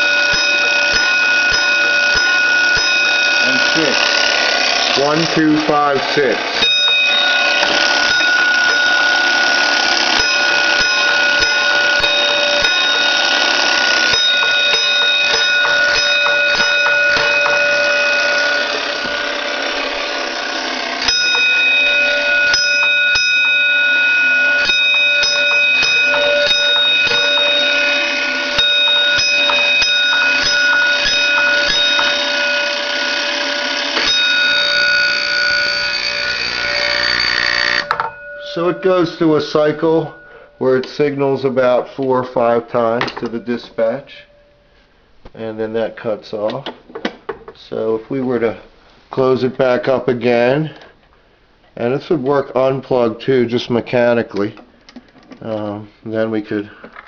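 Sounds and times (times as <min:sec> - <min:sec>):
fire alarm bell ringing: 0:00.0 - 0:41.7.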